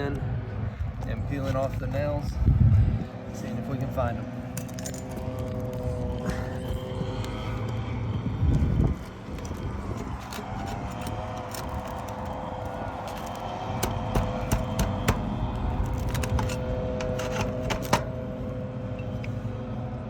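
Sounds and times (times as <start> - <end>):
steady motor hum: 0.0 - 20.0
shingles scraping and clicking: 8.5 - 18.3.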